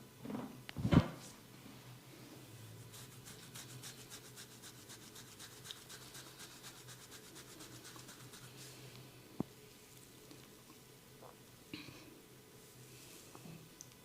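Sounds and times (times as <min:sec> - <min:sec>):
hands rubbing over skin and hair: 0:02.9 - 0:08.8.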